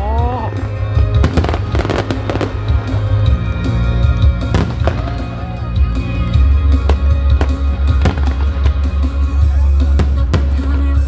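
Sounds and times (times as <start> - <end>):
loud music with deep bass: 0.0 - 11.0
fireworks bangs: 1.1 - 3.8, 4.4 - 5.7, 6.7 - 11.0.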